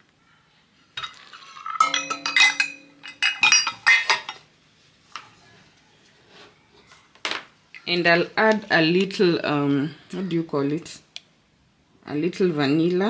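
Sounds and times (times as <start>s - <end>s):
utensils clinking against bowl: 1.0s - 4.5s.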